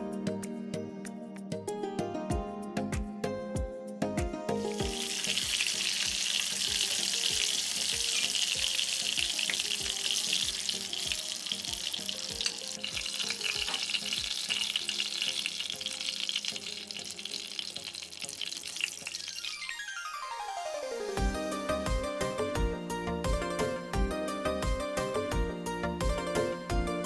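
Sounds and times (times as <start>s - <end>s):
background music with a beat: 0.0s - 6.4s, 7.2s - 14.4s, 21.2s - 27.0s
food sizzling in a pan: 4.6s - 21.8s.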